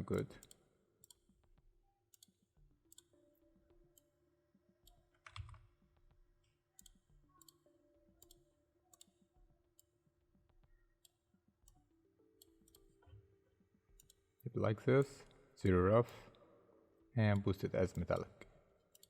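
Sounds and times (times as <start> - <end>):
computer mouse clicks: 8.2 - 9.2, 12.4 - 13.0, 14.0 - 14.2.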